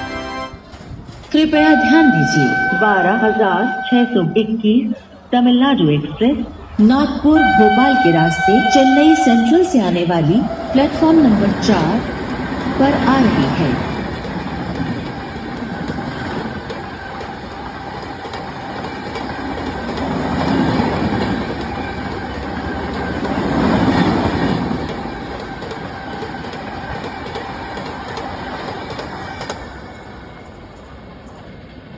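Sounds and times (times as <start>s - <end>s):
train rolling by: 0.0s - 31.9s
wheels clicking over rail joints: 10.6s - 31.0s.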